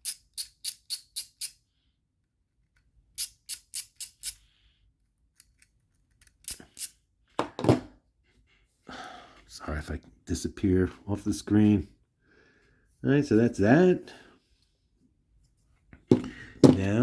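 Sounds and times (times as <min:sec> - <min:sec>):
screwdriver clicking: 0:00.0 - 0:01.6, 0:03.2 - 0:04.4.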